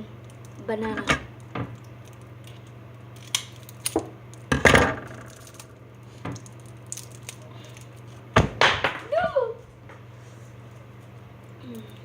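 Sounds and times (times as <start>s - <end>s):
steady low hum: 0.0s - 12.0s
small objects clattering on table: 3.2s - 7.9s.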